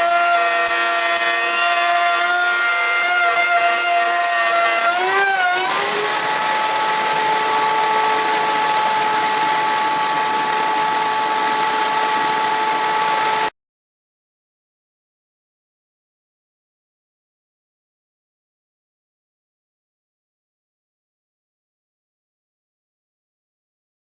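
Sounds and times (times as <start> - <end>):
router motor whining: 0.0 - 13.5.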